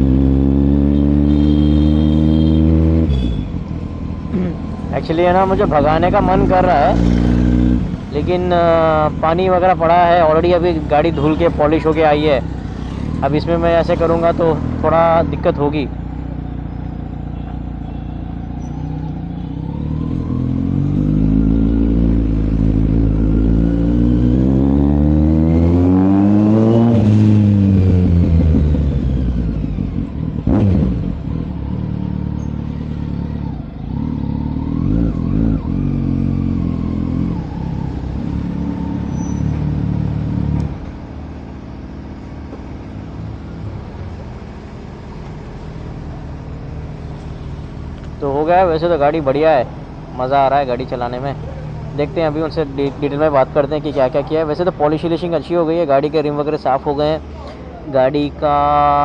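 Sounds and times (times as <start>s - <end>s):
motorcycle engine revving: 0.0s - 44.3s.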